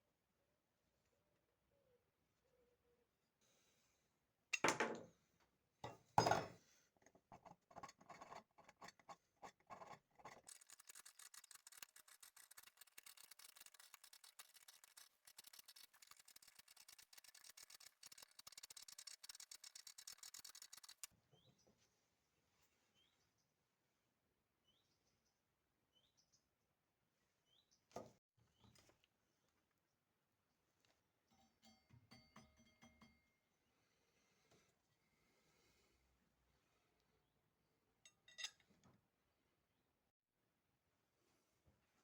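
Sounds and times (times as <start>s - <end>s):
rasp scraping wood: 7.4s - 21.1s.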